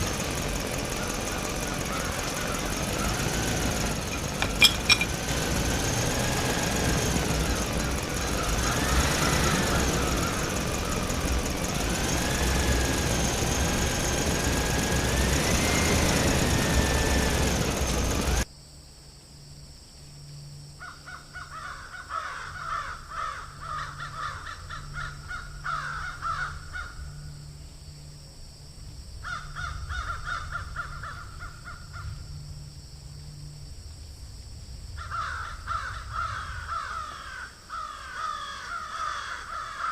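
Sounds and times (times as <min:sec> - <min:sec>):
diesel drilling machine motor: 0:00.0 - 0:18.5
crows cawing: 0:00.9 - 0:03.2, 0:20.8 - 0:27.3, 0:29.2 - 0:32.2, 0:35.0 - 0:39.9.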